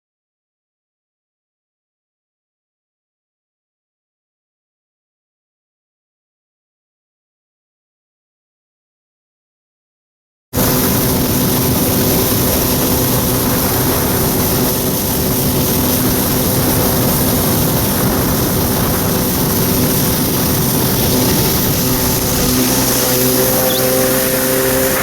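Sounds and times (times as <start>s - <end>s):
dense rushing noise: 10.6s - 25.0s
jet ski engine running: 10.6s - 25.0s.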